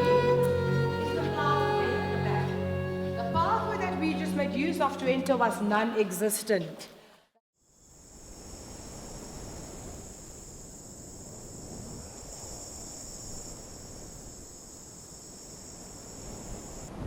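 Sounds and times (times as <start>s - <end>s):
insects chirring: 7.6s - 17.0s.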